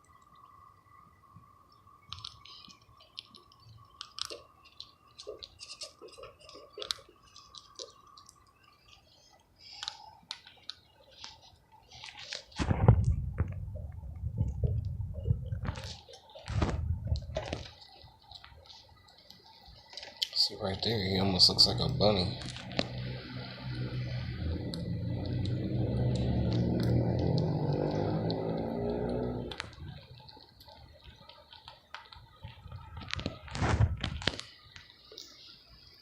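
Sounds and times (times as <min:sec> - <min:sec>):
squirrel cracking a peanut: 0:02.0 - 0:09.1, 0:15.6 - 0:35.3.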